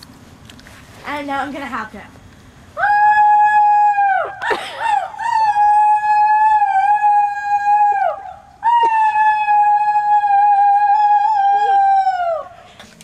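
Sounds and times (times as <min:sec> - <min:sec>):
girl imitating wolf howl: 0:02.8 - 0:12.6.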